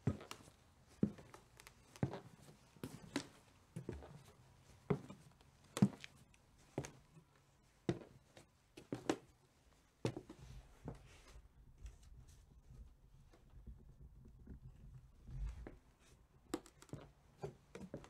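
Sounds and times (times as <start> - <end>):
footsteps on wooden floors: 0.0 - 4.3, 4.9 - 5.2, 5.8 - 6.1.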